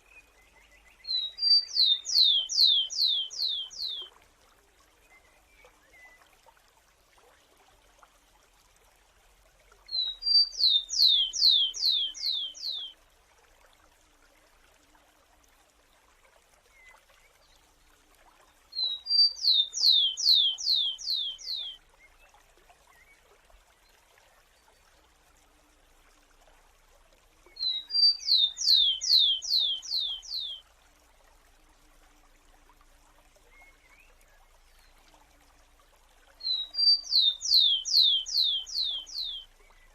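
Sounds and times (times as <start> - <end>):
faint steady hiss: 0.0 - 39.9
sparrow singing: 10.0 - 12.9, 18.8 - 21.8, 27.6 - 30.6, 36.4 - 39.4.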